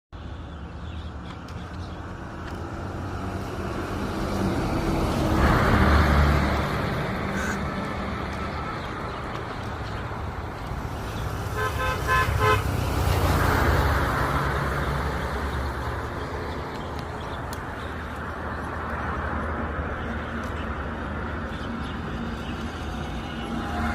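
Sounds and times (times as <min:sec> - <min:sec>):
road traffic passing: 0:00.2 - 0:23.9.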